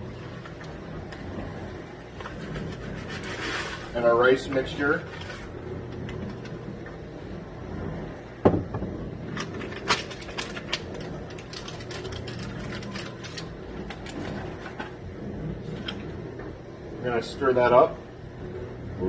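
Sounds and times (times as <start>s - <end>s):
low steady hum: 0.0s - 19.0s
knock on pan: 8.4s - 8.9s
rice grains clicking and rustling: 9.5s - 14.8s.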